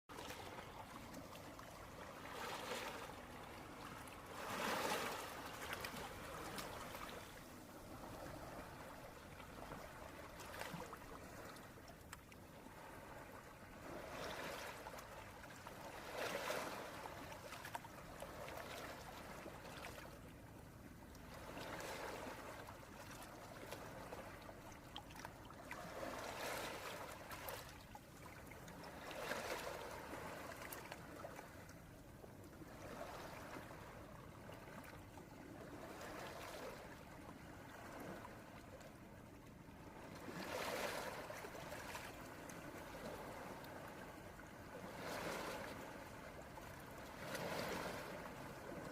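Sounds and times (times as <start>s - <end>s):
waves washing onto beach: 1.8s - 11.8s, 12.6s - 20.1s, 44.7s - 48.9s.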